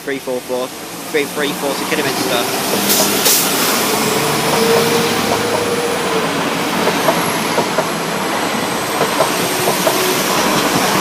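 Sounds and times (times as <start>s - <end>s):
diesel train passing: 0.0s - 11.0s
train wheel clicks: 2.7s - 3.5s, 4.5s - 5.7s, 6.8s - 7.9s, 9.0s - 11.0s.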